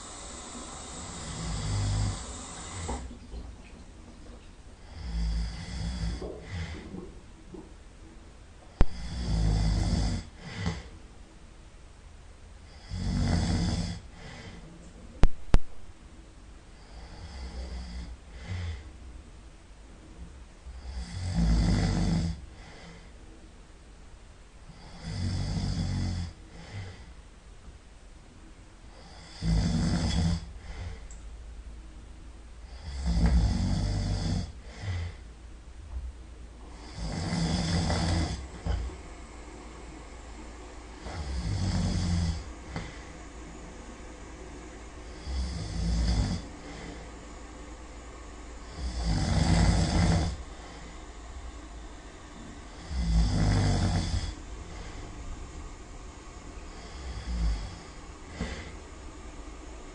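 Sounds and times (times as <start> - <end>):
man snoring loudly: 0.0 - 3.1, 4.8 - 6.8, 8.8 - 10.9, 12.7 - 14.6, 16.9 - 18.8, 20.8 - 22.4, 24.7 - 26.9, 28.9 - 30.5, 32.7 - 35.1, 36.7 - 39.0, 41.0 - 43.1, 45.0 - 47.0, 48.6 - 51.0, 52.7 - 55.1, 56.7 - 58.8
quiet breaths: 0.0 - 59.9.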